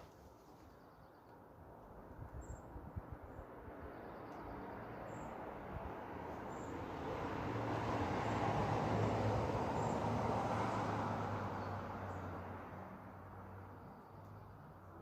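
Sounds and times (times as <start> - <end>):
motor vehicle passing by: 4.8 - 13.8.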